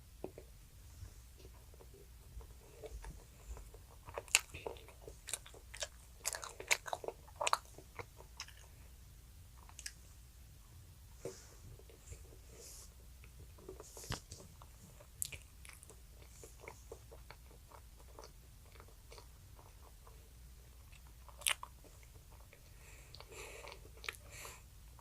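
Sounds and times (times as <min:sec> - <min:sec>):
child chewing and biting: 0:01.4 - 0:08.8, 0:09.6 - 0:10.0, 0:13.2 - 0:25.0.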